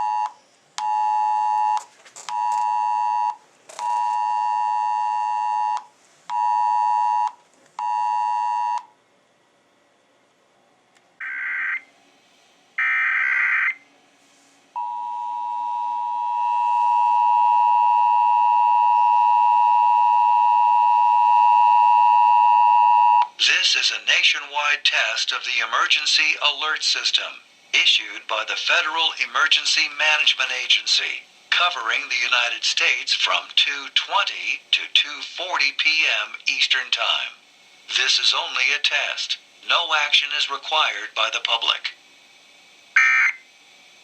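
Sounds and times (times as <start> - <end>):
phone alert tone pulsing: 11.2 - 11.8, 14.8 - 23.2, 43.0 - 43.4
screeching data bursts: 43.0 - 43.4
two-tone attention signal: 43.0 - 43.4.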